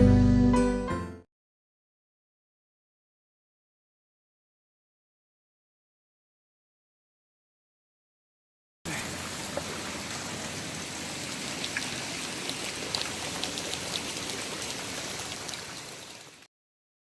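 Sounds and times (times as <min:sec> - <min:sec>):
rain drop taps: 0:08.9 - 0:15.8
rain hissing: 0:08.9 - 0:16.5.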